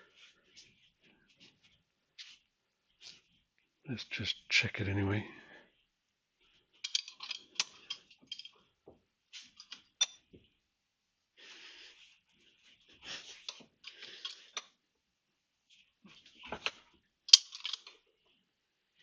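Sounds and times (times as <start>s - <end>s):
metal parts scraping: 6.8s - 8.6s, 13.4s - 14.6s, 17.3s - 17.9s
small metal parts clicking: 6.8s - 8.6s, 13.8s - 14.7s, 17.3s - 18.0s.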